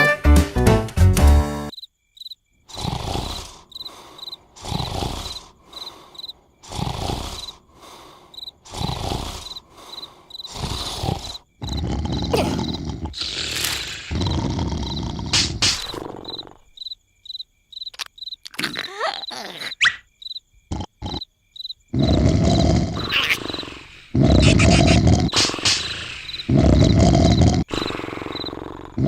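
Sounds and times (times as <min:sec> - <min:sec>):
crickets chirping: 0:01.7 - 0:29.0
cartoon snoring: 0:02.7 - 0:16.7, 0:20.7 - 0:21.3, 0:21.9 - 0:29.0.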